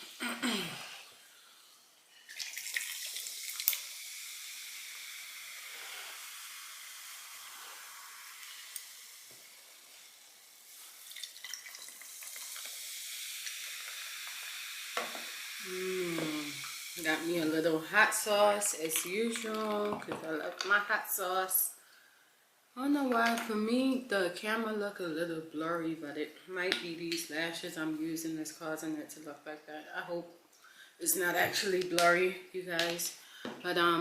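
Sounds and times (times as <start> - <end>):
soda fizzing hiss: 1.0 - 20.0.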